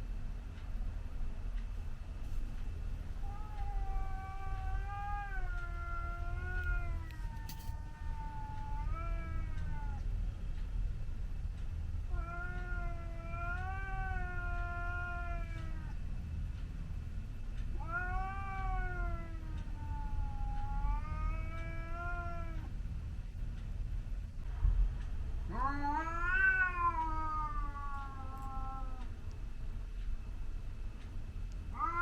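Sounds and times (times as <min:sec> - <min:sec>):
cat yowling: 0:03.3 - 0:10.0, 0:17.8 - 0:22.7, 0:25.5 - 0:29.1, 0:31.8 - 0:32.0.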